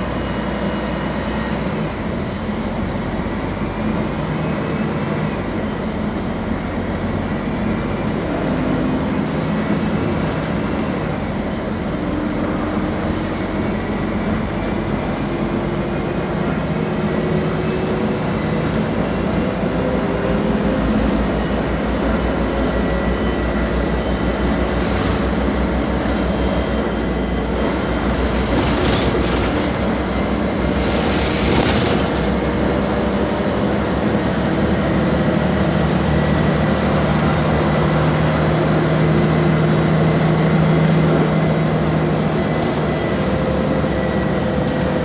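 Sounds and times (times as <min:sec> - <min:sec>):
bus diesel engine running: 0:00.0 - 0:45.0
rattling: 0:22.0 - 0:33.2.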